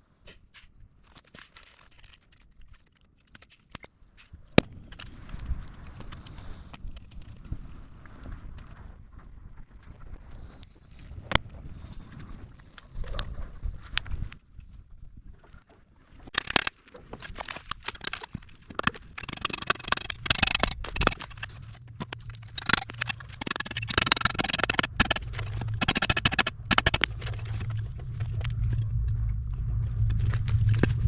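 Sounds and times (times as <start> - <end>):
low steady hum: 19.2 - 31.0.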